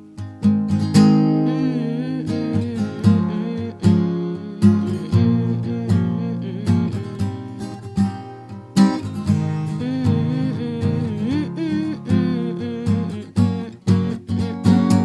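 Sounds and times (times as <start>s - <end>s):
acoustic guitar strumming: 0.0s - 15.0s.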